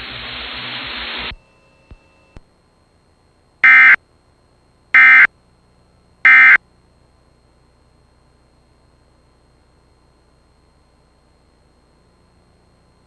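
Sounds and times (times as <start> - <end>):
hiss: 0.0 - 1.3.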